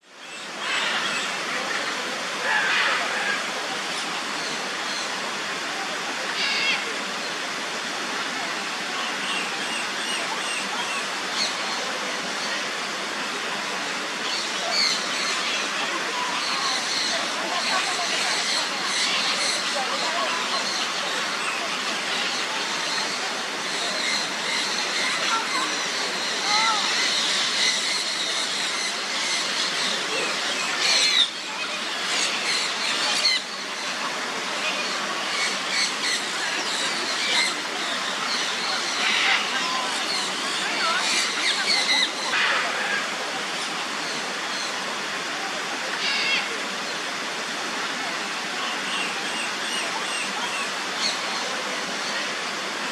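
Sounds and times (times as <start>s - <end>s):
birds squeaky calls: 16.4s - 34.0s.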